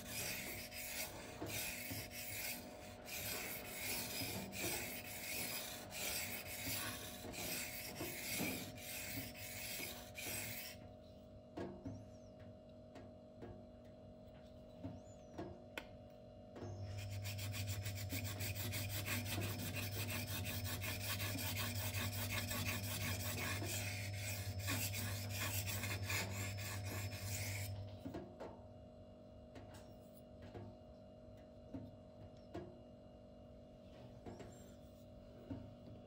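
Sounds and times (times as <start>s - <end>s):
knife scraping on whetstone: 0.0s - 10.8s, 16.9s - 27.8s.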